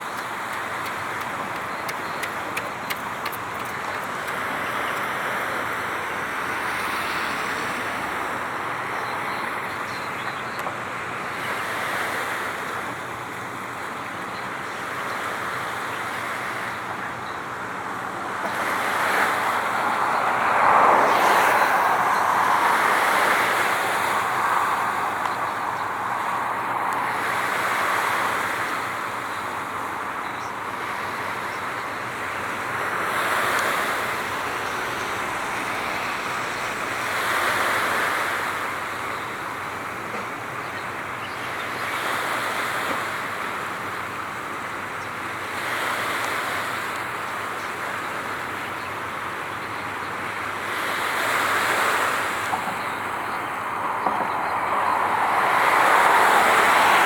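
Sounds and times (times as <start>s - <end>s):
water rushing: 17.7s - 40.0s, 50.5s - 57.0s
wind rushing: 19.0s - 28.2s, 53.0s - 57.0s.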